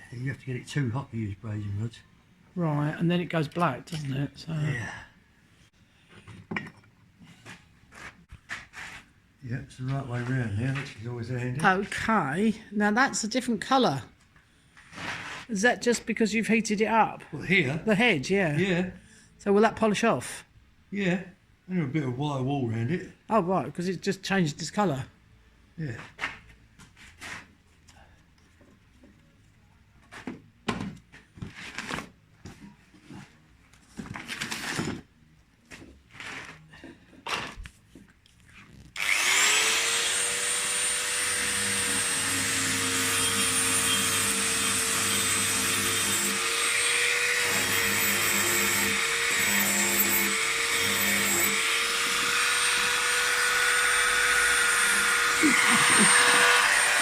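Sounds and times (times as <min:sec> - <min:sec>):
power tool motor whine: 0:39.0 - 0:57.0.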